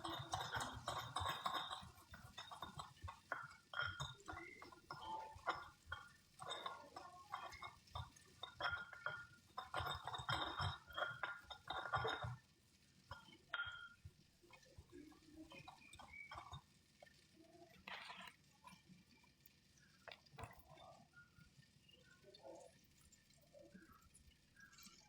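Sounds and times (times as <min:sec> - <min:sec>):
dishes and utensils clinking: 0:00.0 - 0:12.5, 0:13.1 - 0:17.2.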